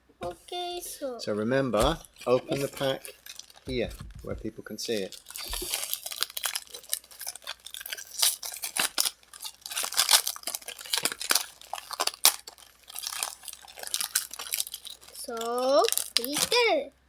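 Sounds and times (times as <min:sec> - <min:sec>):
foil pack tearing and crinkling: 0:01.8 - 0:16.8.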